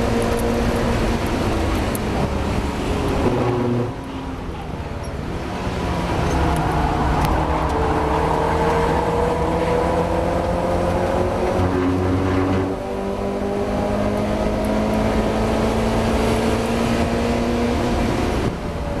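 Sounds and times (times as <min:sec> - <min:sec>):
race car engine accelerating: 0:05.4 - 0:18.6.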